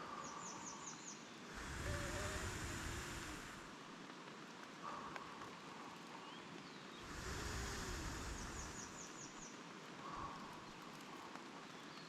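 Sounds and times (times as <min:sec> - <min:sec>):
small bird calling: 0:00.0 - 0:03.7, 0:06.2 - 0:11.0
wind rumbling on microphone: 0:01.5 - 0:03.9, 0:07.0 - 0:10.8.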